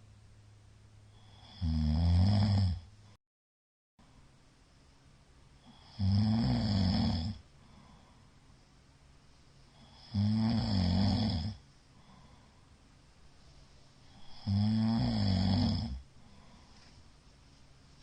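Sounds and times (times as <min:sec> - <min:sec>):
man snoring loudly: 0:01.2 - 0:02.9, 0:05.6 - 0:07.4, 0:09.8 - 0:11.6, 0:14.1 - 0:16.1.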